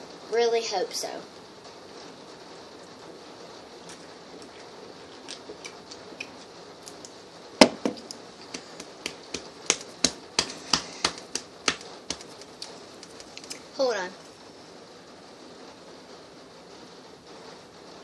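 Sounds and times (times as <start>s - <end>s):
sharp taps and clicks: 5.3s - 13.6s
loud knock: 7.6s - 8.0s.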